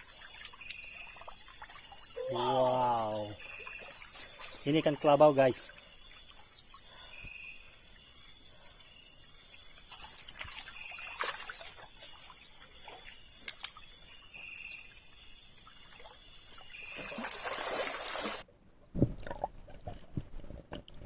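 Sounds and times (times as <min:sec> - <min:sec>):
water splashing: 0:00.0 - 0:06.5, 0:10.1 - 0:13.8, 0:16.0 - 0:20.0
crickets and insects trilling: 0:00.0 - 0:18.4
short repeating insect call: 0:00.0 - 0:18.4.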